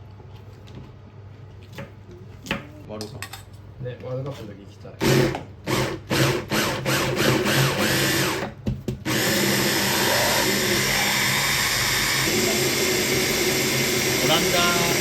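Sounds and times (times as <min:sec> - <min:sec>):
kitchen appliance motor running: 0:05.0 - 0:08.5, 0:09.1 - 0:15.0.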